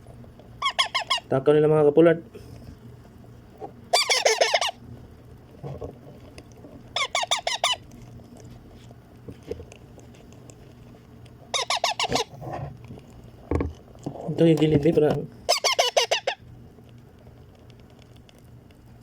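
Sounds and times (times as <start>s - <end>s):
parakeet chicks begging calls: 0.6s - 1.3s, 3.9s - 4.8s, 7.0s - 7.8s, 11.5s - 12.3s, 15.5s - 16.5s.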